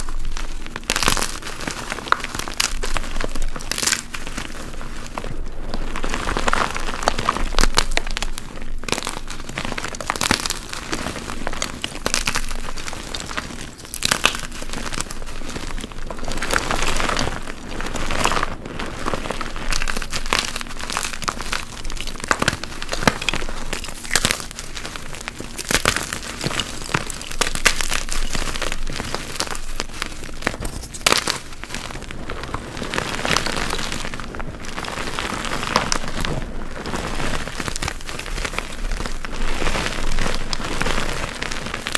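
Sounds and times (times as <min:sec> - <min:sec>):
chalk blocks crunching: 0:00.0 - 0:41.9.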